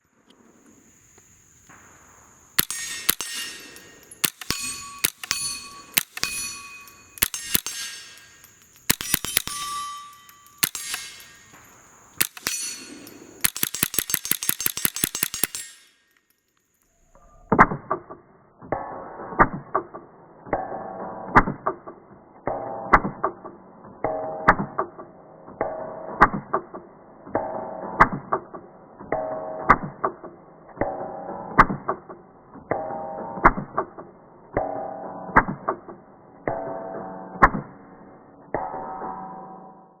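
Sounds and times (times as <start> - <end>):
suppressed rifle shots: 1.7 - 15.9.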